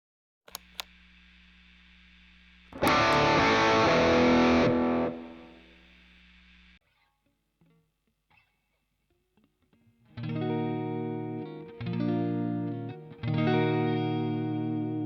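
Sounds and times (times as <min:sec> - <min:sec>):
sharp clicks: 0:00.5 - 0:01.0, 0:02.7 - 0:03.4
amp hum: 0:00.5 - 0:06.8
overdriven electric guitar chord: 0:02.8 - 0:05.7, 0:10.1 - 0:15.0.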